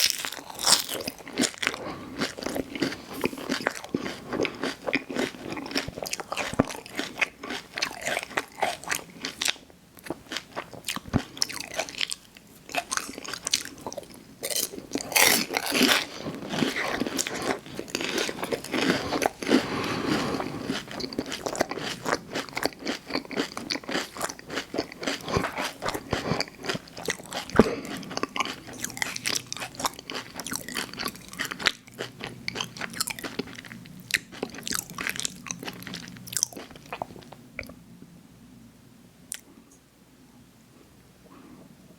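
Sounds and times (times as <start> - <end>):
person crunching while chewing: 0.0 - 37.7.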